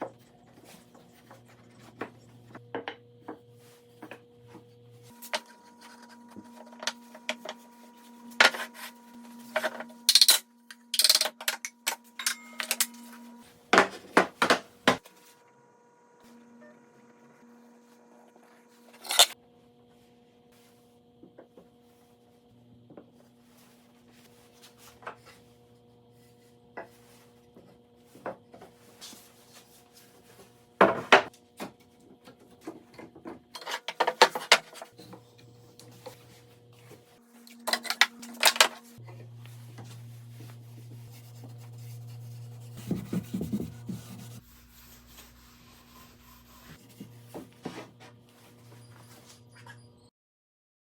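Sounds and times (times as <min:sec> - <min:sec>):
faint hum: 0:34.8 - 0:49.9.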